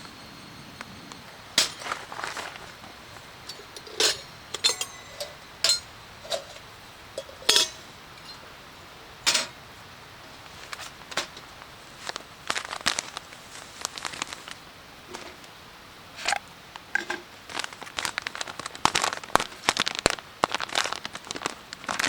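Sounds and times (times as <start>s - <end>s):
metallic clinks and knocks: 1.6s - 8.4s.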